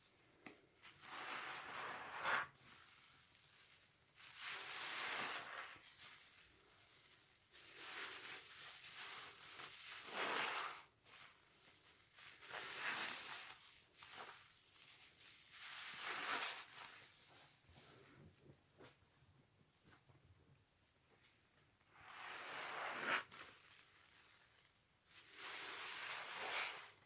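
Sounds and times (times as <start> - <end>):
sponge squeezed squelching: 15.6 - 17.1.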